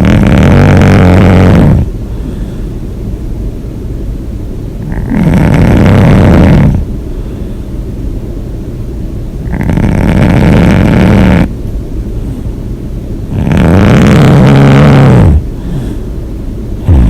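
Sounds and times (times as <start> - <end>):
person snoring loudly: 0.0 - 1.9, 4.8 - 6.9, 9.4 - 11.5, 13.3 - 15.5.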